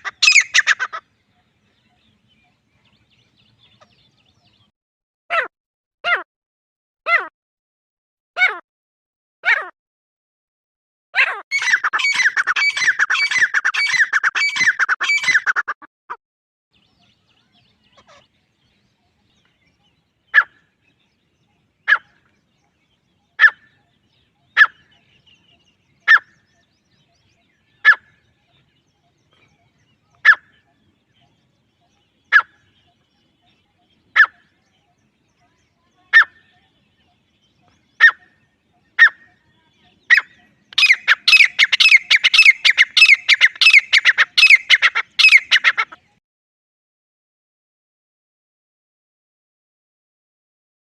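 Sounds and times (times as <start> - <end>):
francolin calls: 0.0 - 2.6, 11.5 - 15.6, 23.2 - 46.0.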